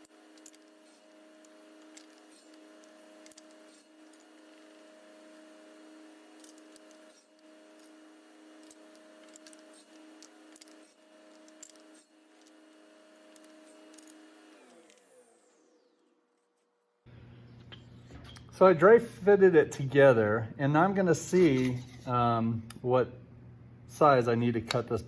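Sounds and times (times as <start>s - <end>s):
table saw running: 0.0s - 16.6s.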